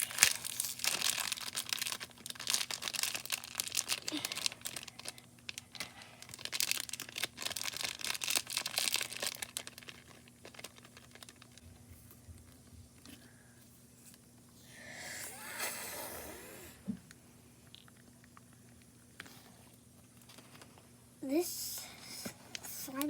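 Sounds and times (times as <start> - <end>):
slime crackling squeezed by hand: 0.0 - 11.6.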